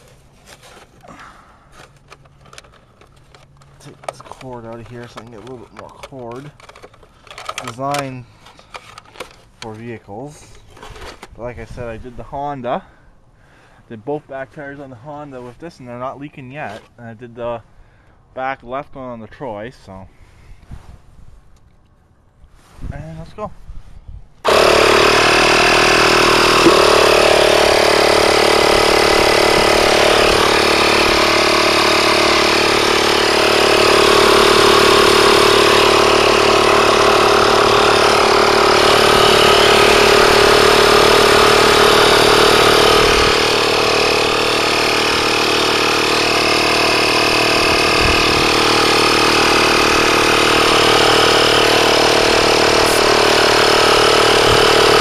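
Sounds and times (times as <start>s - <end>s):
tire inflator compressor running: 0.0s - 9.8s, 24.4s - 55.0s.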